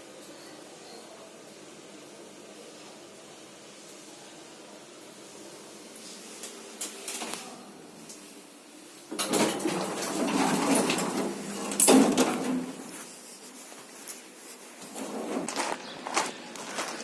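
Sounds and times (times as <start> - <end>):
lift doors sliding with rattle: 9.0 - 13.2, 14.7 - 17.0
lift door clunk: 9.1 - 12.9.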